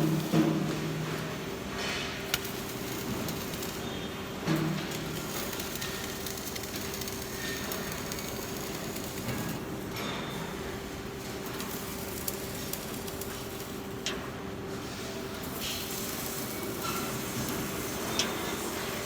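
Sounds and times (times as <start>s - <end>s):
welding arc hiss: 0.0s - 19.0s.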